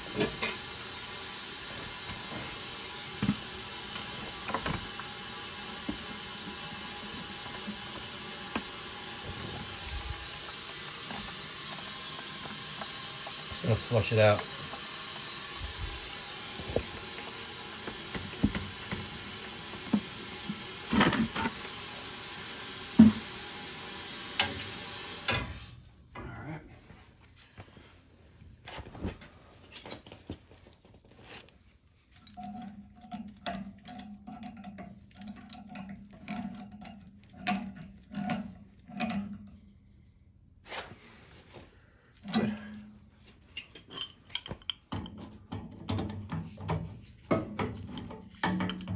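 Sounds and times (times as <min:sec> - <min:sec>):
water rushing through valve: 0:00.0 - 0:25.4
metal fittings clinking: 0:43.6 - 0:46.3.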